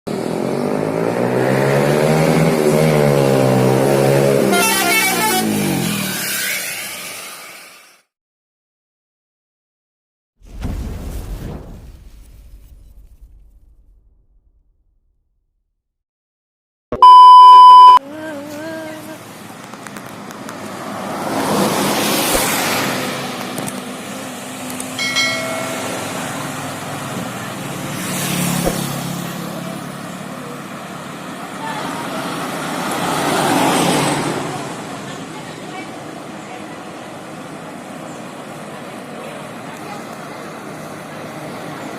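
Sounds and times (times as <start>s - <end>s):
road vehicles passing at speed: 0.1s - 7.2s, 18.9s - 41.9s
high warbling bus horn: 3.6s - 6.1s
car horn toot: 4.5s - 5.7s, 17.0s - 18.0s
bus engine running: 18.1s - 41.9s.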